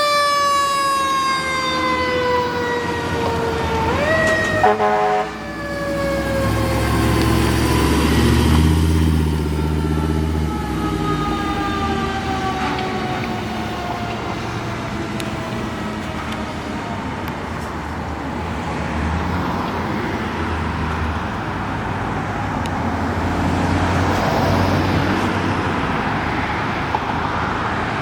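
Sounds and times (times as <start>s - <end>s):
siren falling tone: 0.0s - 17.0s
road traffic passing: 0.0s - 28.0s.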